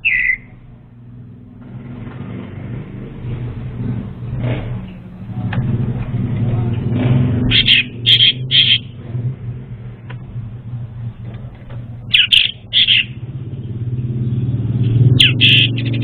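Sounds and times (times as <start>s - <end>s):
thrush calling in high notes: 7.5s - 8.9s, 12.1s - 13.2s, 15.2s - 16.0s.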